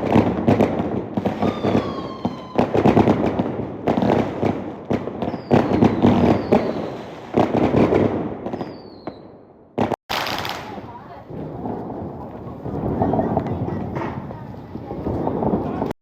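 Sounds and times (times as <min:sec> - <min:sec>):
fireworks whistling: 0:00.0 - 0:11.8
fireworks crackling: 0:00.0 - 0:16.0.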